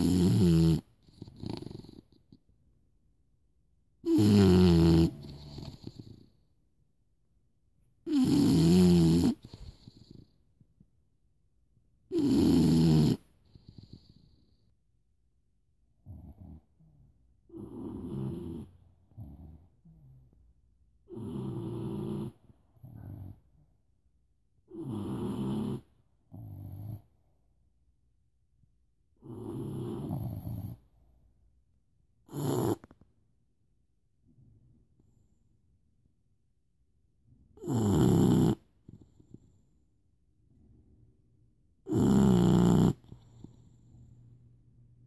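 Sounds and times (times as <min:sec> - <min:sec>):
person snoring: 0:00.0 - 0:02.0, 0:04.1 - 0:06.2, 0:08.1 - 0:10.2, 0:12.1 - 0:14.0, 0:37.6 - 0:38.6, 0:41.9 - 0:43.5
loud snoring: 0:00.0 - 0:02.2, 0:04.0 - 0:06.3, 0:08.1 - 0:10.3, 0:12.1 - 0:14.4, 0:17.5 - 0:20.2, 0:21.1 - 0:23.4, 0:24.7 - 0:27.0, 0:29.2 - 0:30.8, 0:32.3 - 0:32.9, 0:37.6 - 0:39.1, 0:41.8 - 0:43.7.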